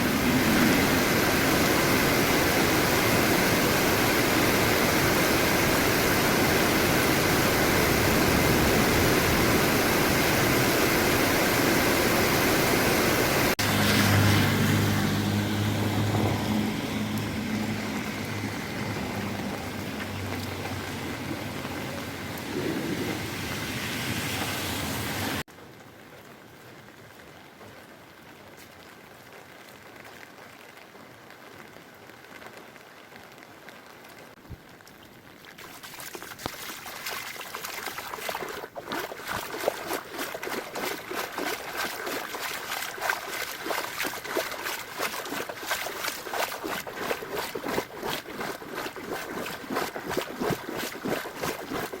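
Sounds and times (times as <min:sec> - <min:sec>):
running water: 0:00.0 - 0:22.7, 0:34.4 - 0:52.0
raindrops pattering and splashing: 0:00.0 - 0:52.0
low engine hum: 0:11.8 - 0:25.4
traffic: 0:13.4 - 0:25.5.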